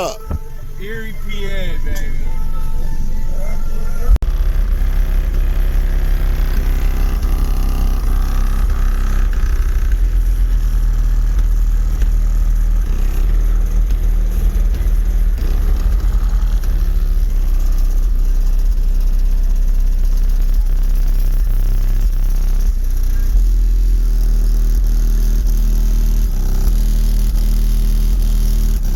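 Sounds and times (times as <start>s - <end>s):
bass-heavy music from subwoofers: 0.0s - 28.9s.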